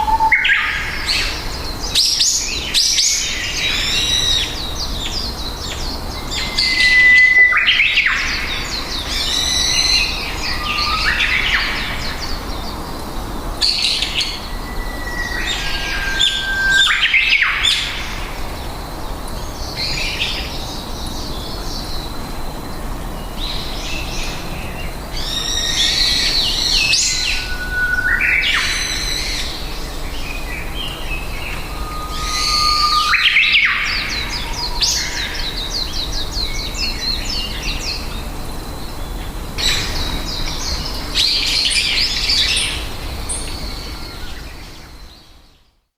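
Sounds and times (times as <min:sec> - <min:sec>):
songbird whistle and chirps: 0:00.0 - 0:12.7, 0:13.6 - 0:18.4, 0:25.2 - 0:38.0.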